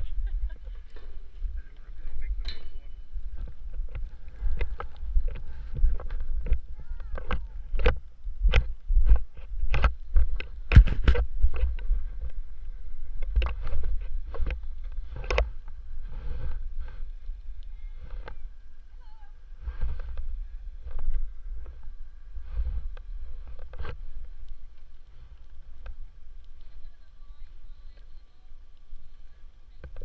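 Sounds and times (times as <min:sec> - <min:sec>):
wind rumble on microphone: 0:00.0 - 0:30.0.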